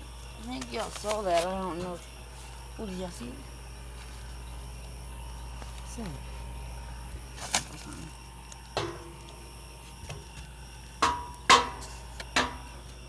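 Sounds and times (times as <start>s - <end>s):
sharp ringing knocks: 8.8s - 9.3s, 11.0s - 12.8s.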